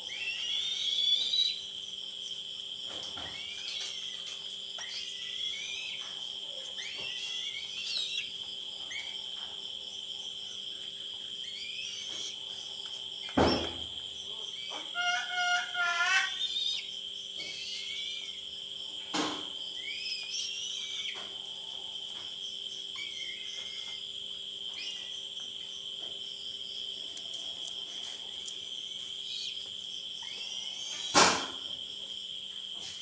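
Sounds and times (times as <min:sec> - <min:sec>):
insect drone: 0:00.0 - 0:33.0
short chirping calls: 0:03.3 - 0:09.2, 0:13.2 - 0:18.4.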